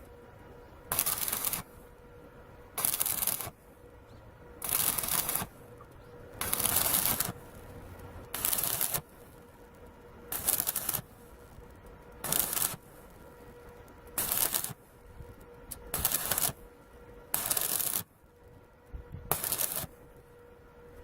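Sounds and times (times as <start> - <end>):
welding arc crackling: 0.0 - 18.6, 19.2 - 20.3
faint steady hum: 0.0 - 21.0.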